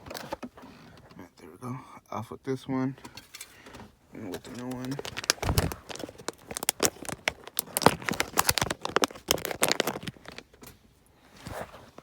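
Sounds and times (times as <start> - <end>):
plastic clicks and rustles: 3.0 - 10.8.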